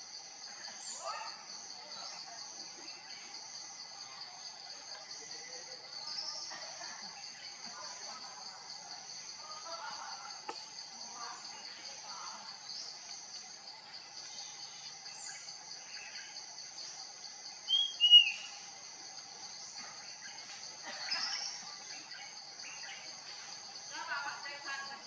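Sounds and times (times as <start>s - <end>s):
bird whistled notes: 17.7s - 18.6s.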